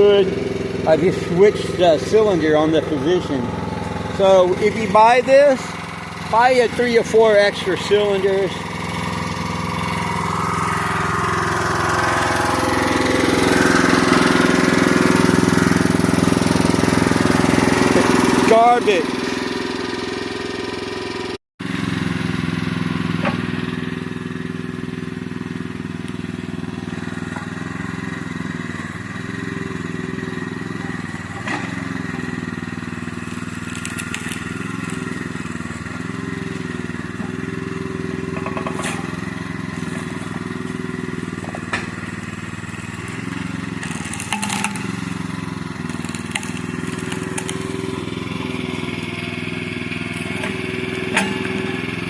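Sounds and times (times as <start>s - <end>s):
small gas engine running: 0.0s - 52.0s
digging clanks and knocks: 38.3s - 39.2s, 43.8s - 45.0s, 50.2s - 51.9s.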